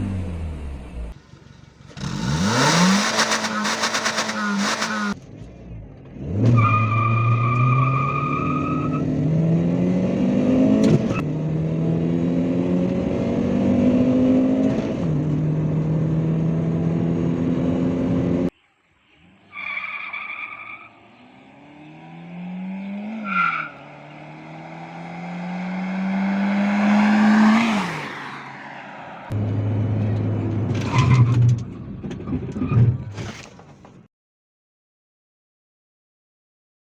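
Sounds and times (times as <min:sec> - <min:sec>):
car engine accelerating through gears: 0:00.0 - 0:18.5, 0:21.0 - 0:31.8.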